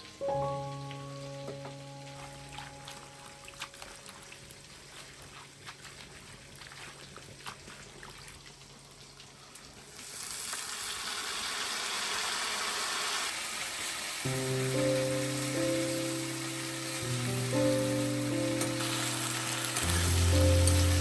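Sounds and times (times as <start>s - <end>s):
food frying in hot oil: 6.4s - 21.0s.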